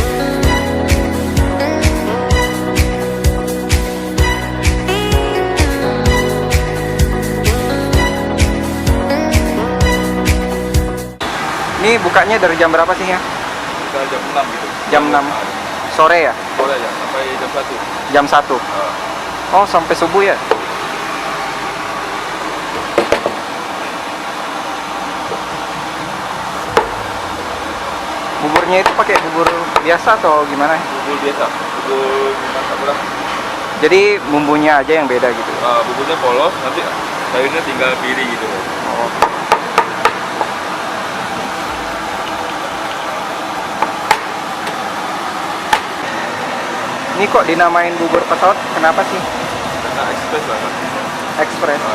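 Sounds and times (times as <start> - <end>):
busy food stall background: 11.2 - 51.9
steady rushing noise: 11.2 - 51.9
sharp knocking: 20.5 - 20.7, 22.9 - 23.4, 26.7 - 27.3, 28.5 - 29.9, 39.2 - 40.5, 43.8 - 44.8, 45.7 - 46.0.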